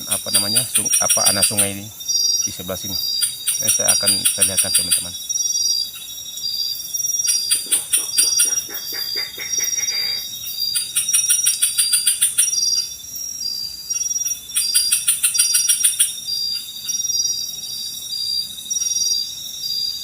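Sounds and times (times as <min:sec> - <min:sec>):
rapid high chirring: 0:00.0 - 0:17.4
insects shrilling: 0:00.0 - 0:20.0
animal calls rising in pitch: 0:07.6 - 0:10.3.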